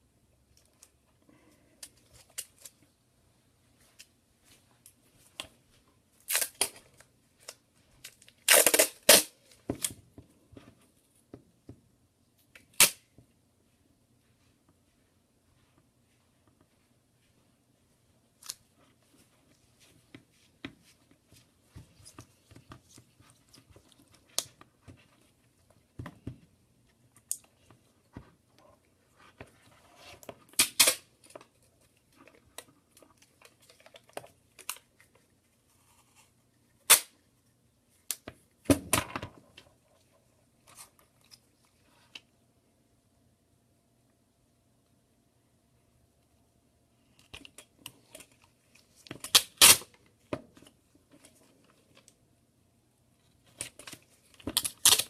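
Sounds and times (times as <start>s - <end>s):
tape tearing: 6.2s - 7.6s, 8.4s - 9.6s, 12.7s - 13.0s, 30.5s - 31.1s, 36.8s - 37.2s, 49.2s - 49.9s, 53.6s - 55.0s.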